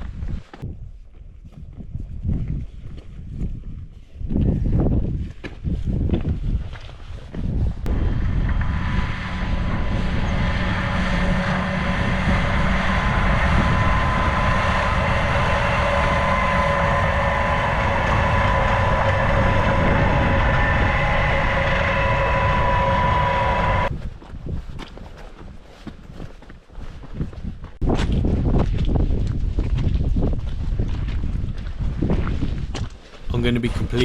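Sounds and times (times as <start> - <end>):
train engine droning: 7.9 - 23.9.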